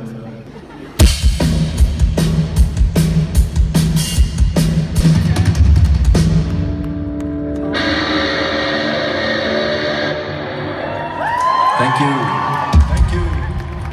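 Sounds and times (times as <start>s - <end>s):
drum kit beat: 1.0s - 8.1s.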